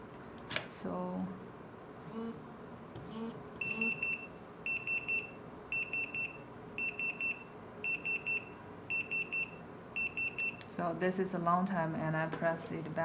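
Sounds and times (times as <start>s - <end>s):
high-pitched pager beeps: 3.6s - 10.6s.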